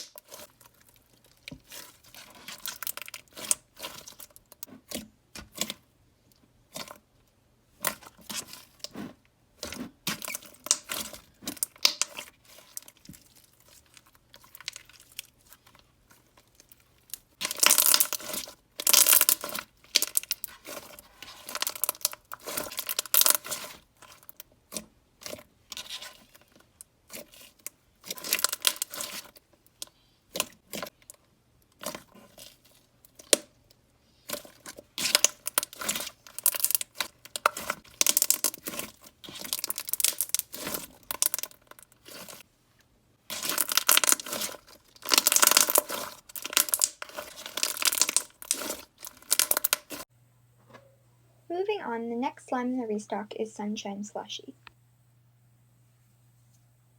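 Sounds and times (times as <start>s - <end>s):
slime squished by hand crackling: 7.8s - 29.4s, 43.2s - 50.0s.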